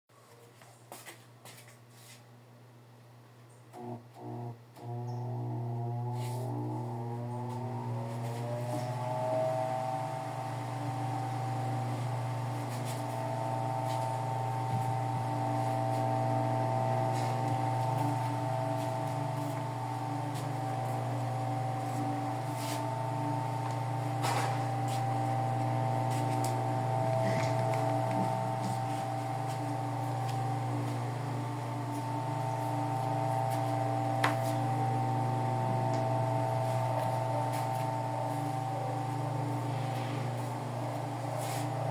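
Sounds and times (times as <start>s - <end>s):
fan motor humming and whining: 3.7s - 41.9s.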